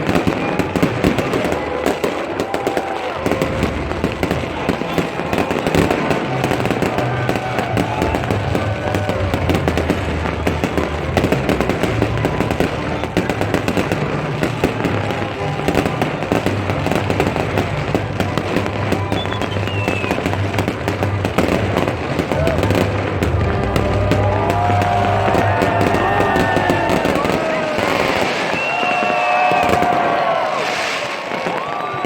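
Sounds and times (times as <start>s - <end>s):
fireworks crackling and popping: 0.0s - 32.0s
music playing: 2.9s - 28.4s.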